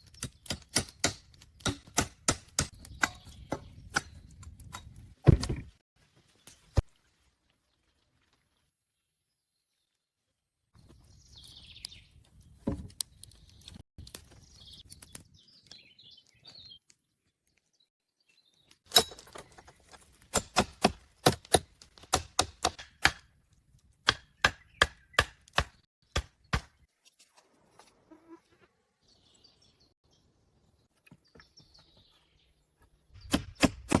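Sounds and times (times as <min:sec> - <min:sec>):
blade chopping wood: 0:00.0 - 0:05.7, 0:20.2 - 0:23.3, 0:24.0 - 0:26.9, 0:33.2 - 0:34.0.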